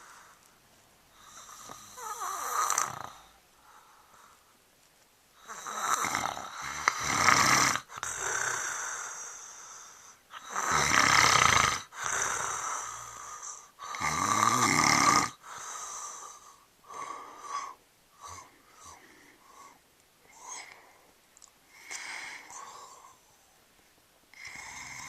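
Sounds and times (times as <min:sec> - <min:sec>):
quiet breath: 0:00.0 - 0:04.7, 0:07.8 - 0:10.6, 0:11.8 - 0:14.1, 0:15.3 - 0:25.0
man snoring: 0:01.2 - 0:03.4, 0:05.4 - 0:09.8, 0:10.4 - 0:19.2, 0:24.4 - 0:25.0.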